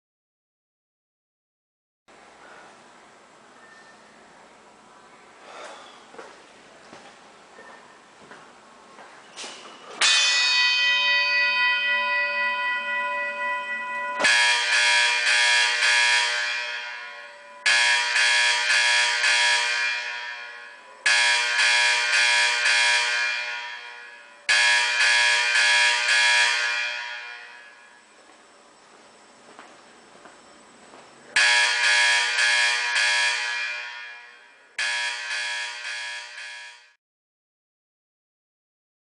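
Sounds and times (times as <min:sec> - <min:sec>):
fire alarm horn blasts: 0:09.6 - 0:28.2, 0:31.3 - 0:37.0
long ringing alarm tone: 0:09.9 - 0:30.1, 0:31.2 - 0:37.0.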